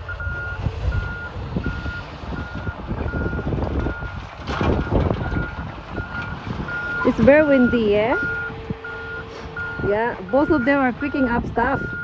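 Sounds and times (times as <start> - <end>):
diesel machinery rumble: 0.0 - 12.0
backup alarm beeping: 4.8 - 12.0.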